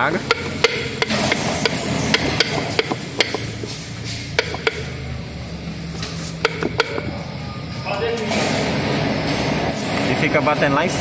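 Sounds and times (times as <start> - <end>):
suspension strut knocking: 0.0 - 7.4.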